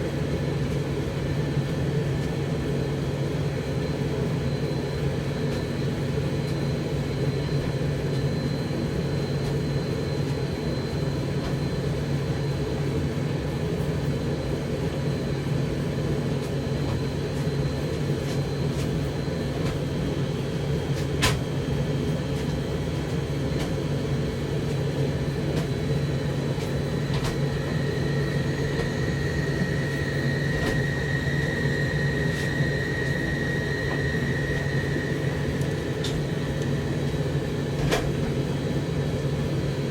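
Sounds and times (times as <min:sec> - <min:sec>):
tumble dryer motor humming: 0:04.8 - 0:39.9
faint high whine: 0:23.3 - 0:39.8.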